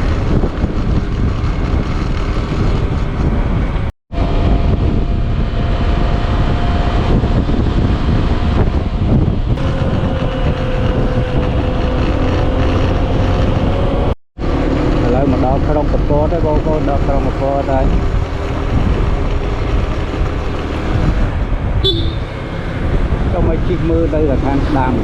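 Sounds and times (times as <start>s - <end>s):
wind rumbling on microphone: 0.0s - 25.0s.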